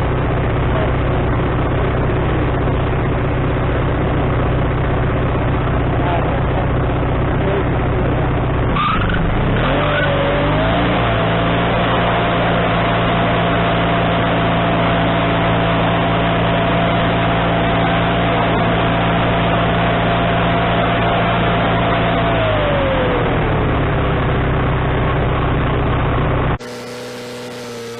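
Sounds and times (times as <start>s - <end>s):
sawmill engine running: 0.0s - 27.9s
thin high whine: 26.6s - 27.9s.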